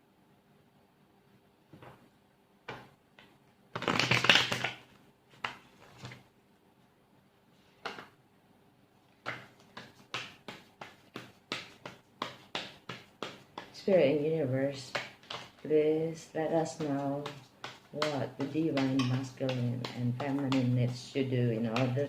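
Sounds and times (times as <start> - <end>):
cards being shuffled by hand: 3.2 - 6.3, 9.2 - 13.8, 14.8 - 15.7, 16.5 - 22.0.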